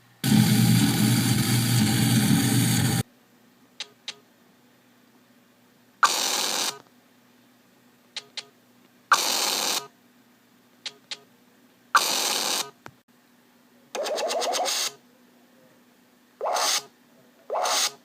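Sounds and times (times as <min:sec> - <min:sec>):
harsh static bursts: 0:00.2 - 0:03.0, 0:06.0 - 0:06.8, 0:09.1 - 0:09.9, 0:12.0 - 0:12.8
rapid buzzing rattling burst: 0:06.0 - 0:06.8, 0:09.1 - 0:09.9, 0:12.0 - 0:12.8.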